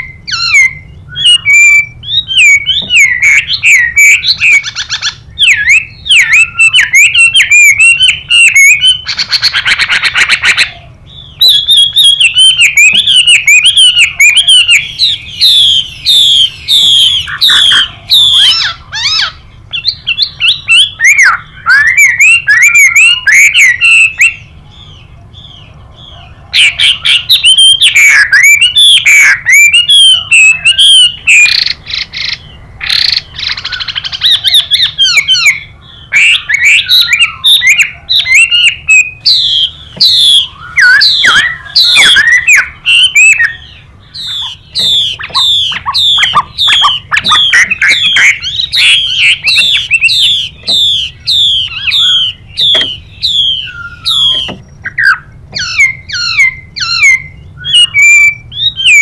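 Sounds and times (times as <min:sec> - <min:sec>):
thrush singing whistled phrases: 0:00.0 - 0:59.0
repeated down-slurred notes: 0:38.6 - 0:59.0.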